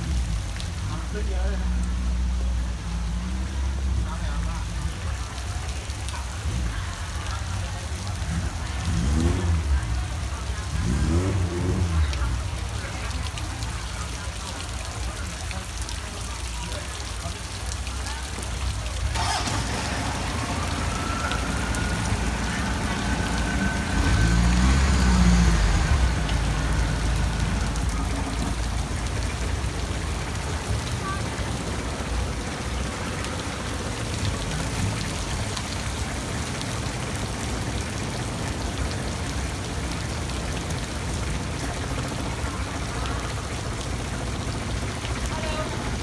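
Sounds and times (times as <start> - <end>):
steady rain falling: 0.0 - 46.0
boat motor running: 19.1 - 35.5.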